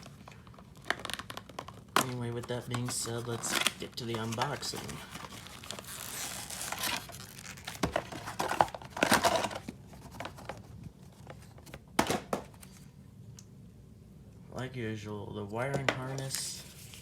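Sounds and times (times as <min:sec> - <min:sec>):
packaging crinkling and tearing: 0:00.0 - 0:11.7.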